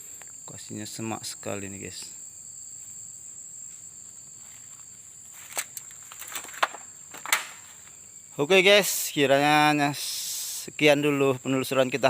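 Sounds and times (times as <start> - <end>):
insects droning: 0.0 - 12.0
footsteps through dry leaves: 3.9 - 6.7.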